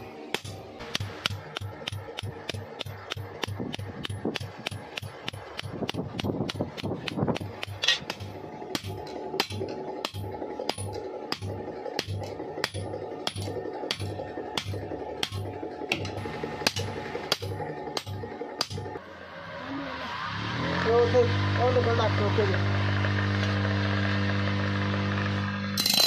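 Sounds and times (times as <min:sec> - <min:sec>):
hammer striking steel blade: 0:00.0 - 0:18.9.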